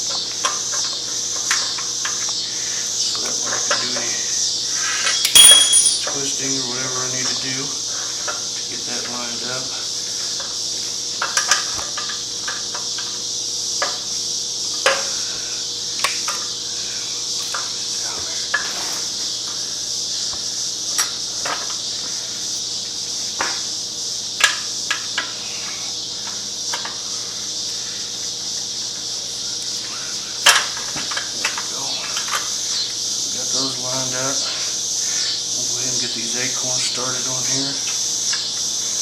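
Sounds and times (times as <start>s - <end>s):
steady high hiss: 0.0s - 39.0s
metal clinks and knocks on pipe: 5.2s - 6.1s.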